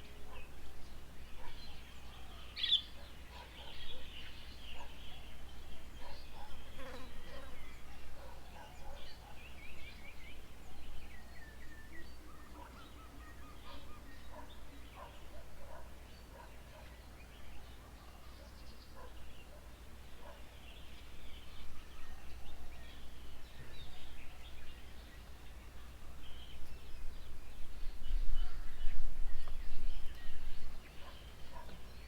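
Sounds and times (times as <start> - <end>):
wild birds chirping: 0.0 - 32.0
wind rumble on microphone: 26.6 - 30.9.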